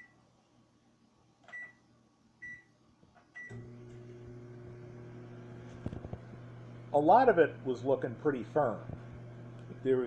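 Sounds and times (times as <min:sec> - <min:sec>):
microwave keypad beeps: 0:01.5 - 0:01.8, 0:02.4 - 0:02.7, 0:03.4 - 0:03.6
microwave oven humming: 0:03.4 - 0:10.0.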